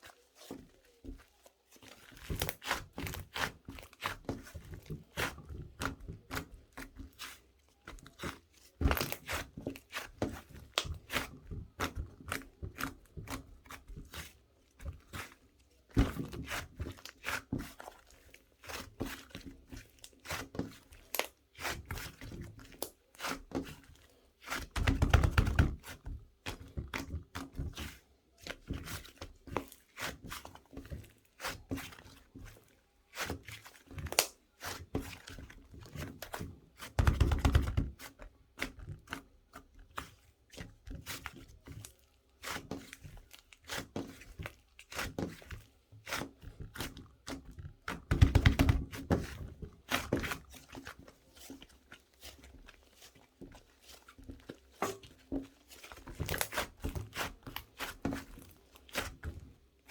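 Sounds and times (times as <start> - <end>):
rubbing or rustling: 48.1 - 59.9.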